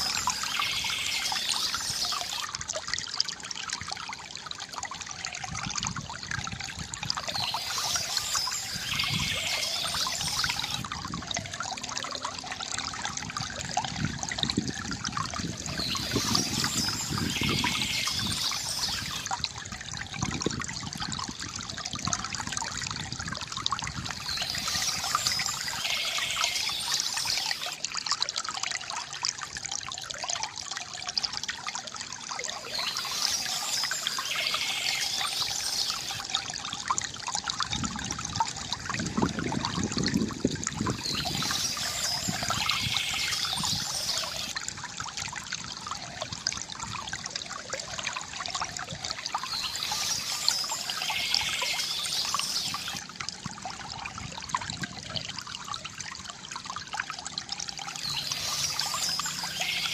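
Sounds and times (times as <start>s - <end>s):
bird chirping: 0.0s - 2.4s, 7.3s - 10.8s, 15.7s - 19.2s, 24.2s - 27.8s, 32.6s - 36.2s, 40.9s - 44.5s, 49.4s - 53.0s, 58.0s - 59.9s
water trickling from fountain: 0.0s - 59.9s.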